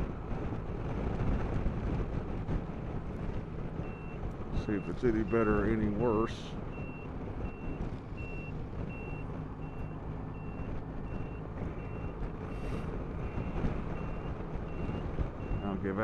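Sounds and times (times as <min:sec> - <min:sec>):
scooter engine low rumble: 0:00.0 - 0:16.0
turn-signal beeper beeping: 0:06.8 - 0:10.6.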